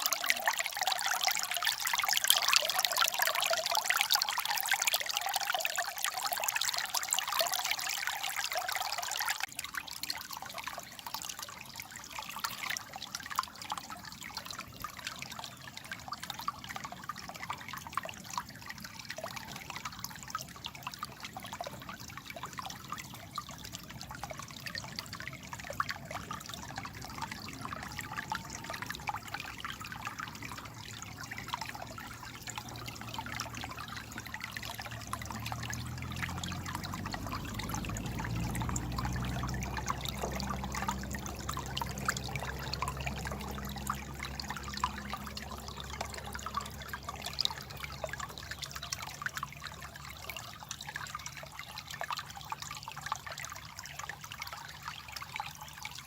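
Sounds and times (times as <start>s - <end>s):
stream water babbling: 0.0s - 56.0s.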